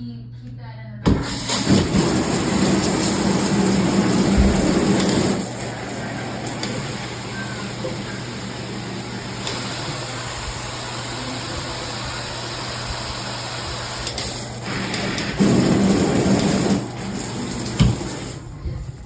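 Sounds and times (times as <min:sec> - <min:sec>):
water spraying from shower head: 0:01.1 - 0:18.6.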